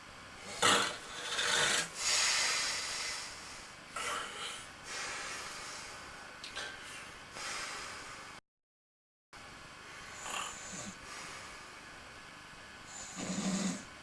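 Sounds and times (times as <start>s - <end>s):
steady hiss: 0.0s - 8.4s
person snoring: 0.4s - 2.8s, 4.0s - 4.7s, 10.1s - 11.0s, 12.9s - 13.9s.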